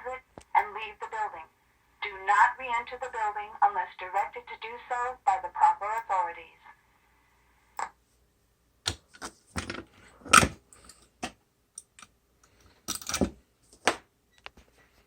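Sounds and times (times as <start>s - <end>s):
handling clicks knocks and rustles: 8.9s - 14.6s.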